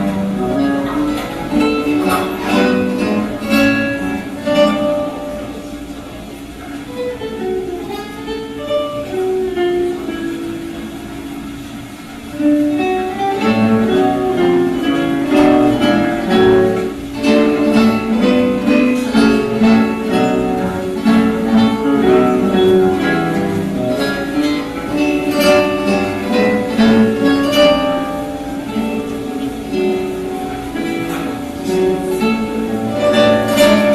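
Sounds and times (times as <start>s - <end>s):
acoustic guitar ensemble playing: 0.0s - 33.9s.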